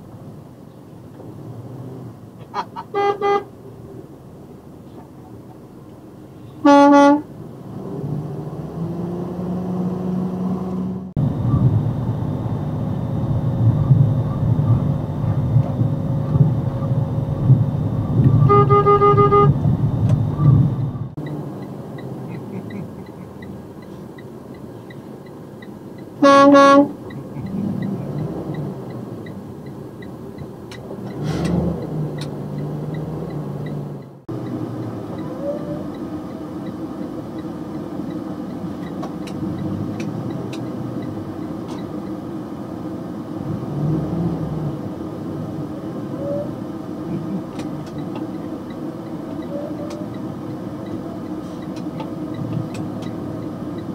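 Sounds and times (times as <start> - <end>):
road noise: 0.0 - 53.9
truck engine drone: 0.0 - 53.9
truck air horn blast: 2.6 - 3.5, 6.6 - 7.3, 18.4 - 19.6, 26.2 - 27.0.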